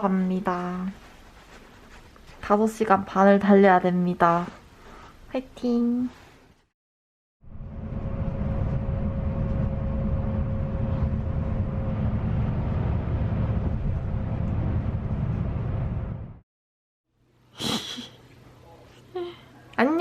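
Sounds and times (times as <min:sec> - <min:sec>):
bus engine and road drone: 0:07.4 - 0:16.4.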